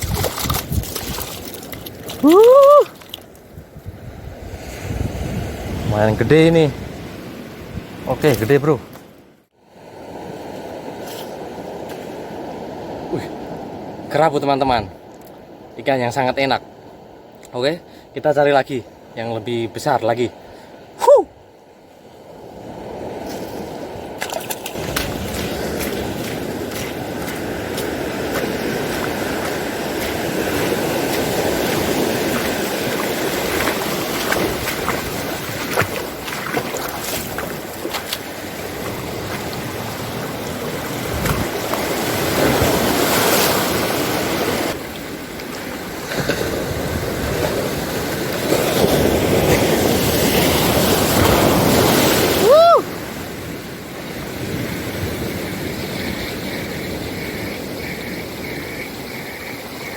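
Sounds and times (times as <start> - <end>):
ocean surf washing in: 4.1 - 9.0, 24.8 - 59.9.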